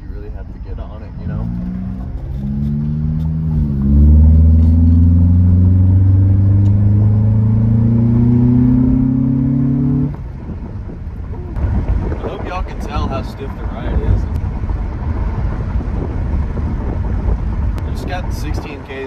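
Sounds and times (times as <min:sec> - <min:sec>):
car engine accelerating hard: 0:00.0 - 0:19.0.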